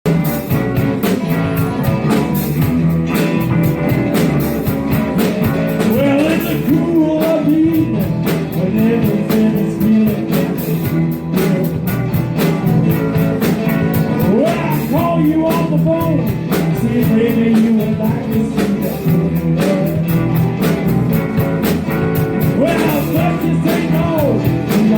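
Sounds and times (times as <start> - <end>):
bass: 0.0 - 24.9
electric guitar bending notes: 0.0 - 24.9
steady drum beat: 0.0 - 24.9.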